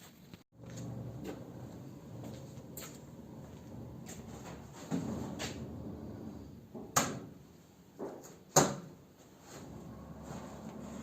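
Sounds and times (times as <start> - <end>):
low background rumble: 0.6 - 6.8.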